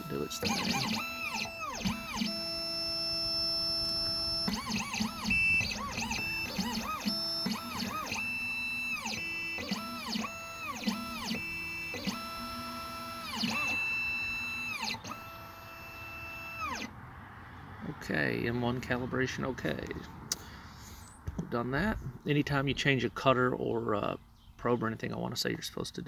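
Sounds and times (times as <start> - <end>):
stepper motor whine: 0.0 - 19.9.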